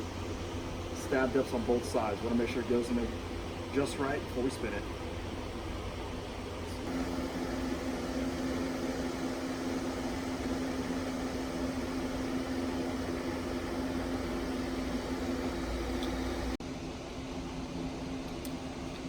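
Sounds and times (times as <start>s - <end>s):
mechanical hum: 0.0s - 19.0s.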